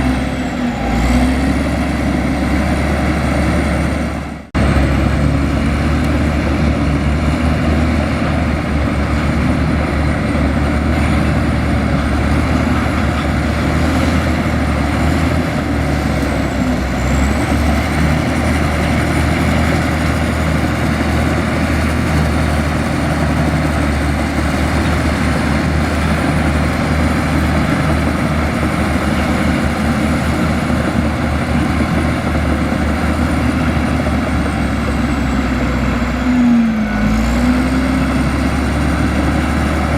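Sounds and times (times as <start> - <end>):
heavy diesel engine running: 0.0 - 39.9.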